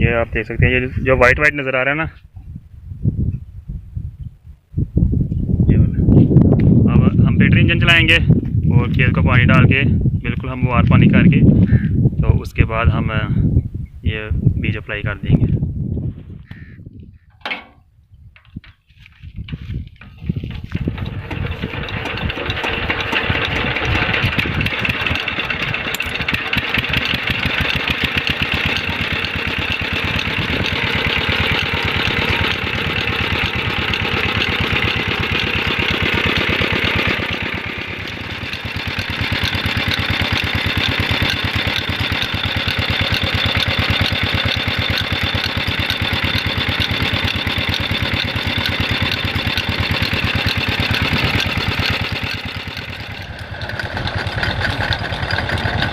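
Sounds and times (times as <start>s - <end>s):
diesel engine chugging: 20.1s - 55.9s.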